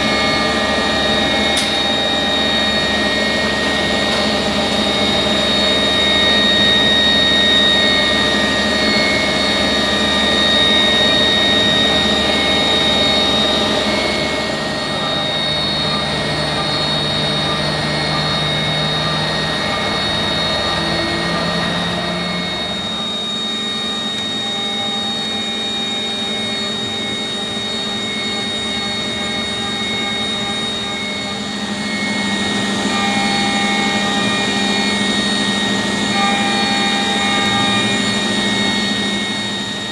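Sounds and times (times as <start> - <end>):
milling machine whine: 0.0 - 39.9.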